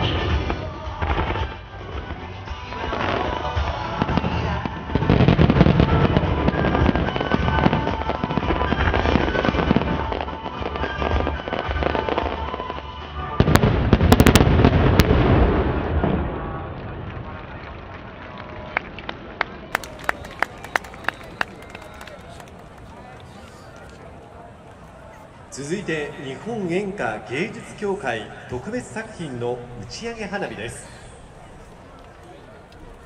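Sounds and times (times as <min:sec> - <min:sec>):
music playing: 0:00.0 - 0:13.5
fireworks bursting and crackling: 0:00.0 - 0:33.0.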